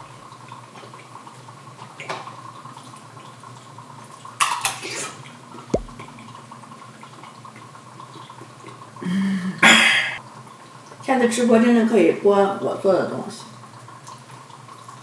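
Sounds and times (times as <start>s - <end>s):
drip-like plop: 5.8s - 6.1s
sharp click: 5.8s - 6.1s.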